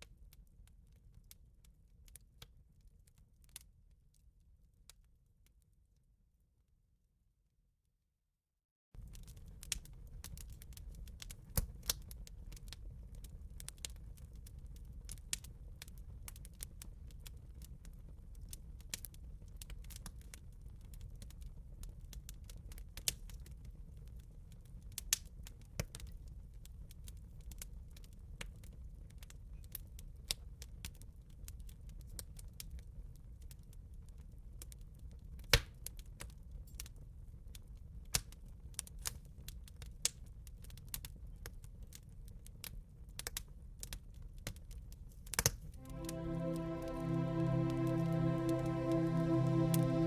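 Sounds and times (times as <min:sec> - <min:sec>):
soft music: 0:45.8 - 0:50.0.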